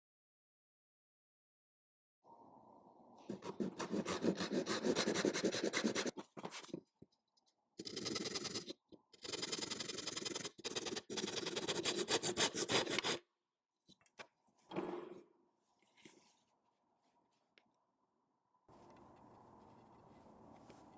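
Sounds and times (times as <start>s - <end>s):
hand tool scraping wood: 3.3s - 6.8s, 7.8s - 13.2s.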